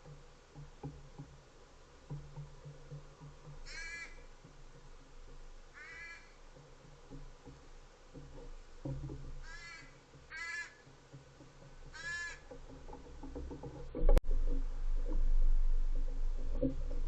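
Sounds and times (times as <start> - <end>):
crow cawing: 3.6 - 4.2, 5.7 - 6.4, 9.4 - 10.9, 11.9 - 12.5
low rumbling noise: 13.6 - 17.0.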